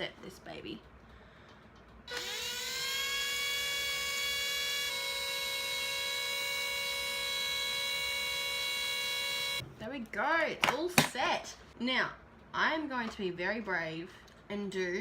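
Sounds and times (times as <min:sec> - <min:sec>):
cordless drill whining: 0:02.1 - 0:09.6.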